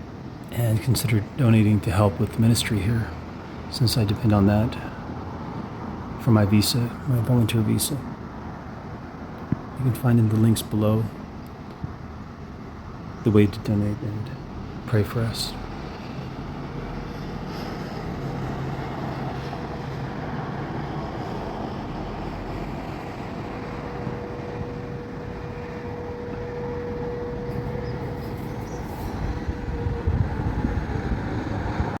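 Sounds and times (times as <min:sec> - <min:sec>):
traffic noise: 0:00.0 - 0:32.0
air raid siren: 0:15.6 - 0:32.0.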